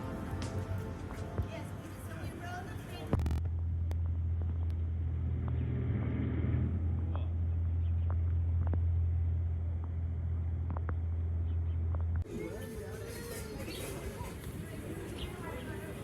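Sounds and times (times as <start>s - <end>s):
vehicle engine droning: 0.0s - 12.3s.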